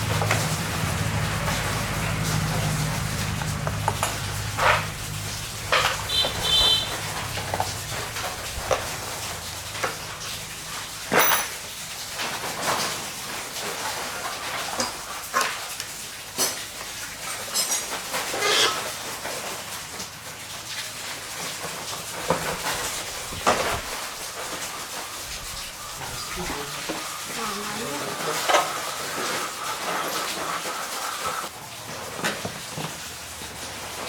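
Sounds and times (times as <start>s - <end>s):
tools clinking on metal: 11.1s - 11.6s.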